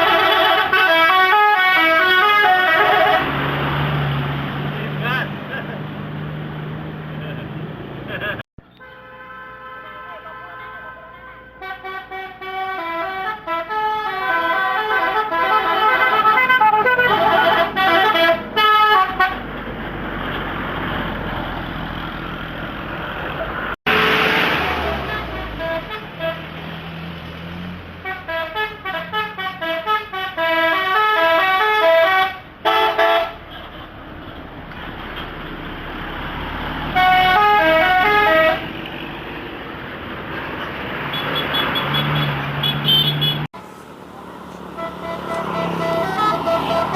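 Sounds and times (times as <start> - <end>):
multi-tone bus horn melody: 0.0 - 3.5, 8.6 - 19.5, 23.8 - 26.6, 28.0 - 33.9, 36.8 - 38.9, 41.0 - 43.5, 44.6 - 46.9
bus engine: 0.0 - 9.2, 10.2 - 46.9
road traffic: 0.0 - 46.9.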